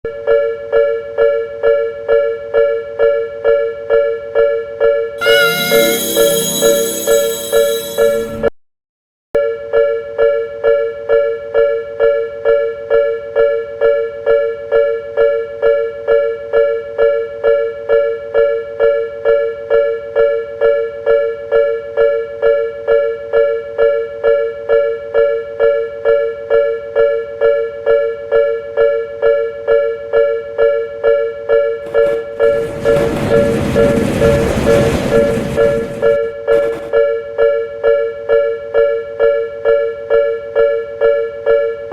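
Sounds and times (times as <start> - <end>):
level crossing warning bell: 5.2 - 8.5
train passing: 5.2 - 8.5, 31.8 - 37.1.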